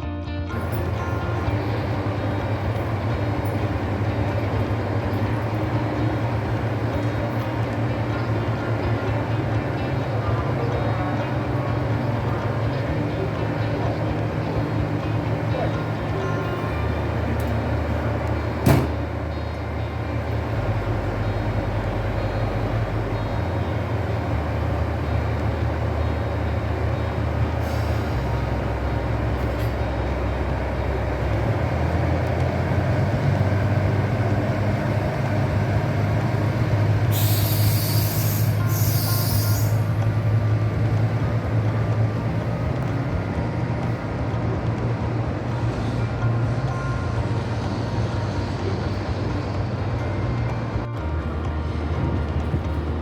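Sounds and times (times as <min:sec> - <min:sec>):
diesel railcar engine drone: 0:00.0 - 0:53.0
air hisses: 0:37.1 - 0:39.8.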